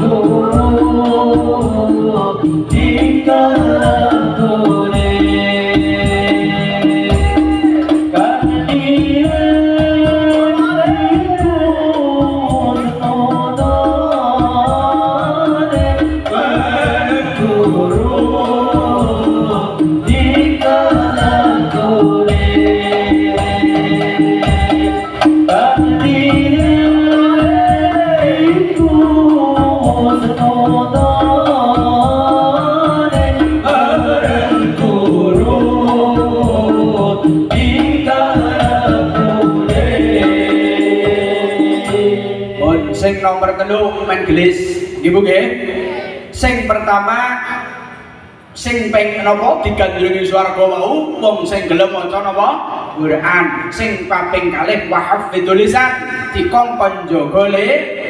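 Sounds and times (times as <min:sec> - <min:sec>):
person singing devotional song: 0:00.0 - 0:43.4
steady drum beat: 0:00.0 - 0:45.6
musical accompaniment: 0:00.0 - 0:46.9.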